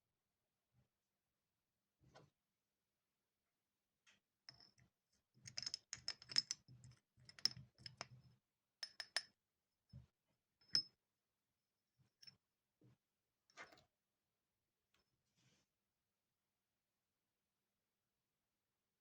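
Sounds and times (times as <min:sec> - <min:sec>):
small metal objects clicking: 0:05.5 - 0:06.6.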